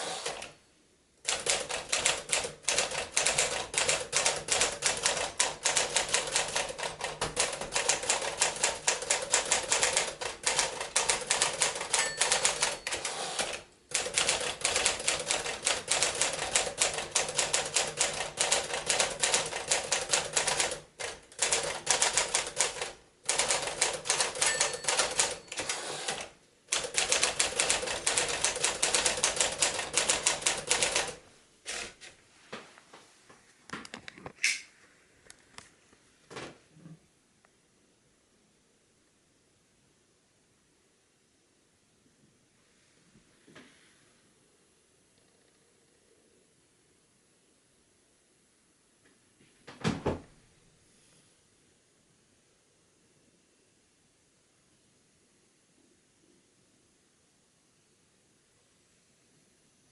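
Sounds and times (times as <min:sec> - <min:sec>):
manual typewriter typing: 0:00.1 - 0:00.5, 0:01.2 - 0:32.0.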